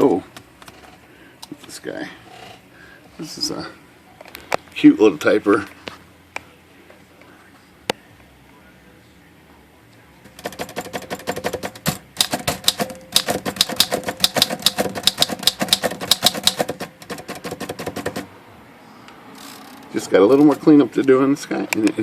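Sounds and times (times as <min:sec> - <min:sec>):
typewriter keys striking: 0:10.4 - 0:18.3.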